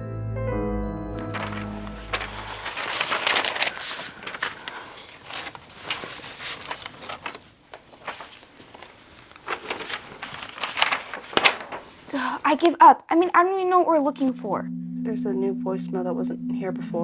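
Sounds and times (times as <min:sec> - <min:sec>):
piano music: 0:00.0 - 0:03.7, 0:14.2 - 0:17.0
objects rustling and knocking: 0:01.2 - 0:12.1.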